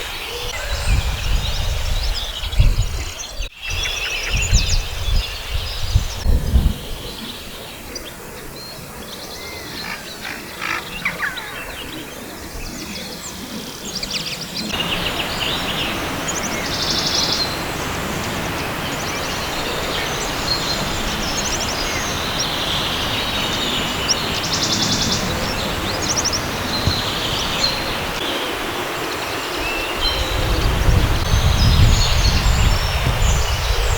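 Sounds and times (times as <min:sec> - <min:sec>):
birds chirping and singing: 0:00.0 - 0:33.9
river rushing: 0:14.7 - 0:33.9.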